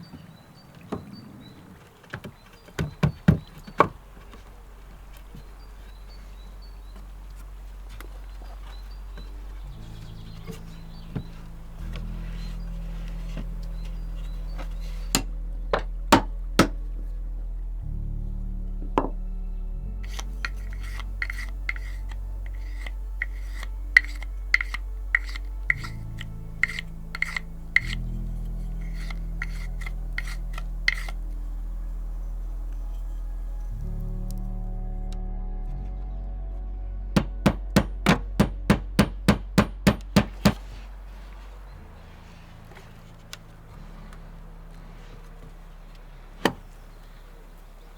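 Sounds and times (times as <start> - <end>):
hand tool working wood: 0.0 - 16.9, 20.0 - 31.5, 37.2 - 47.9
background music drone: 0.0 - 47.9
sharp striking blows on wood: 15.2 - 16.8, 37.2 - 40.6.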